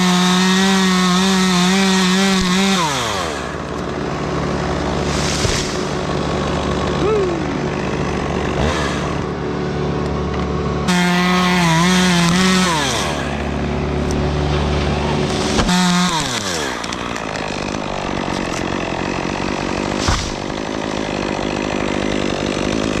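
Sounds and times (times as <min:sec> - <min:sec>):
chainsaw revving: 0:00.0 - 0:23.0
low engine idling: 0:03.6 - 0:10.8.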